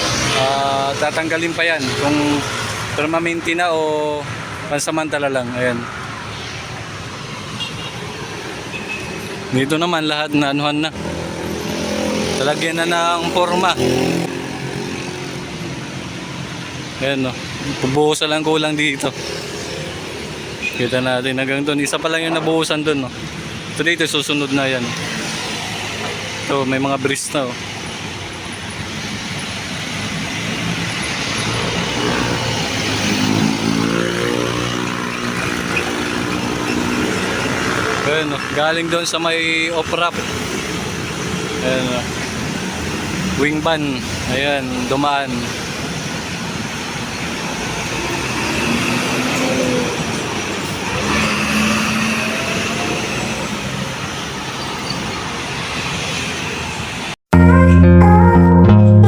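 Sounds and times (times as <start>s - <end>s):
street traffic driving past: 0.0s - 57.2s
vehicle engine hum passing: 30.0s - 39.0s.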